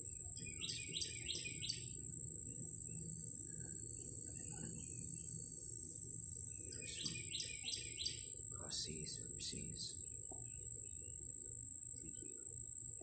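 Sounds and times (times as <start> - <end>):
high-pitched whine: 0.0 - 10.1
low hiss: 0.0 - 13.0
bird chirping: 0.3 - 2.0, 2.8 - 11.2.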